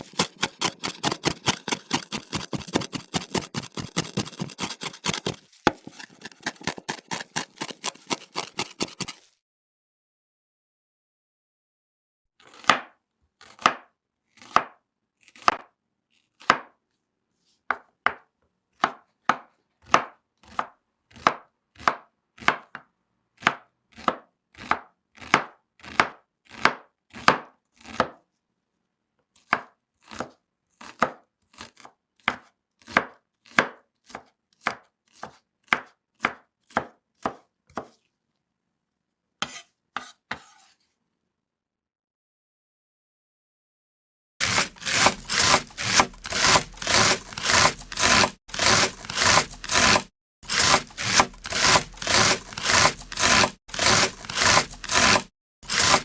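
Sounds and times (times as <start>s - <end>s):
knife chopping on cutting board: 0.0s - 9.3s, 14.4s - 14.8s, 16.4s - 16.7s, 18.8s - 22.8s, 23.4s - 28.2s, 29.5s - 38.0s, 39.4s - 40.7s, 44.4s - 56.0s.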